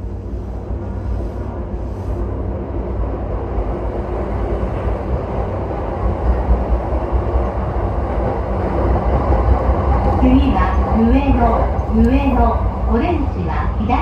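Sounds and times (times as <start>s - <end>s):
electric train rumbling on track: 0.0s - 14.0s.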